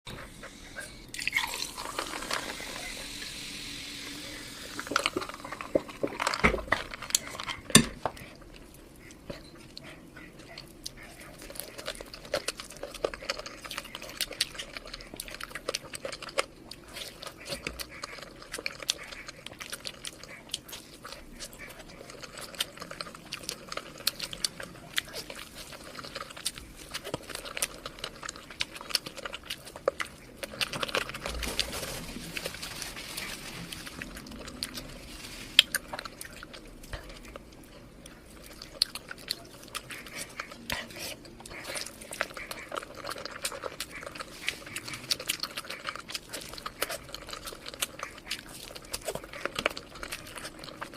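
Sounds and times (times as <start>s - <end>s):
wet chewing mouth clicks: 35.5s - 50.9s.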